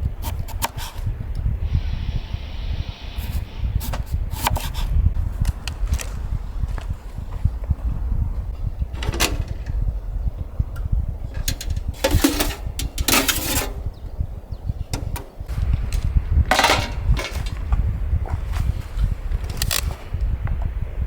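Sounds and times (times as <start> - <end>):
wind buffeting microphone: 0.0 - 21.0
short clattering noises: 11.3 - 13.9.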